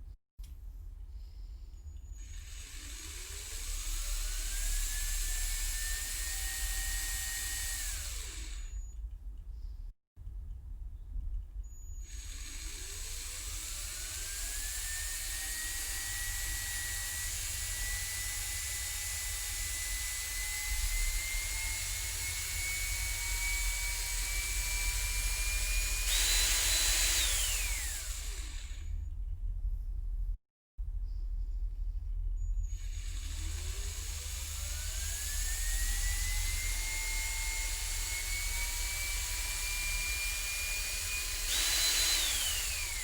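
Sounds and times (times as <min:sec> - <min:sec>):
electric drill motor whining: 0:02.1 - 0:08.9, 0:12.1 - 0:29.0, 0:32.7 - 0:43.0.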